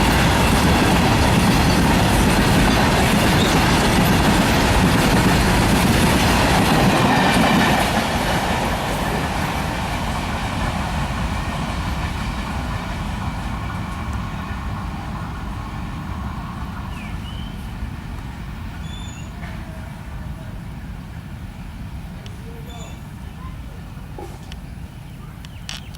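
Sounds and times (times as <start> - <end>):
freight train wheels clattering: 0.0 - 19.9.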